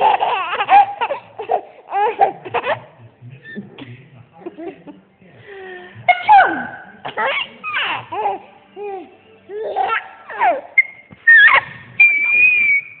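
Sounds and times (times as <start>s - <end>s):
baby laughing and squealing: 0.0s - 2.9s, 7.1s - 13.0s.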